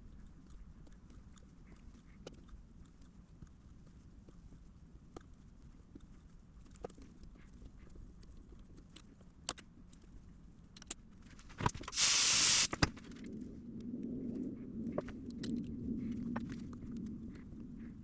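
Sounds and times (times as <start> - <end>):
loud hiss: 11.9 - 12.9.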